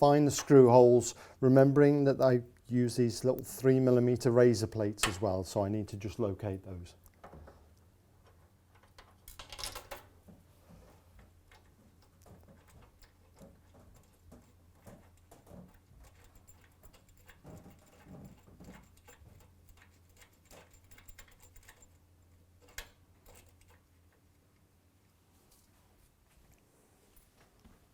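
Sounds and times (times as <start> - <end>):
faint low hum: 0.0 - 27.9
small metal parts clicking: 8.2 - 10.1, 11.5 - 23.9.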